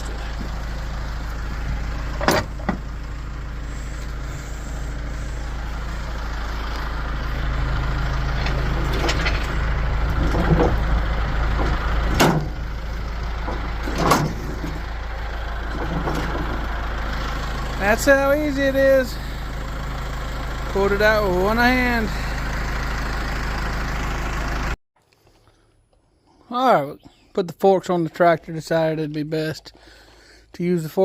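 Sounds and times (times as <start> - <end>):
steady low hum: 0.0 - 17.4
metal knocks and clatters: 8.3 - 12.7, 13.4 - 14.8, 15.6 - 16.6.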